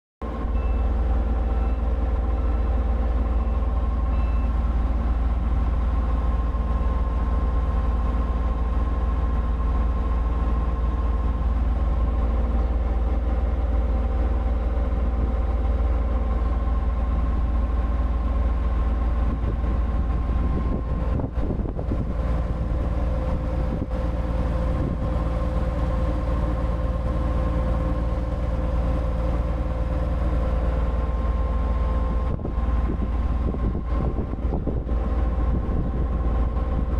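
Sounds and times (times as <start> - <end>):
bulldozer diesel engine running: 0.2 - 36.9
steady whine: 18.3 - 36.9.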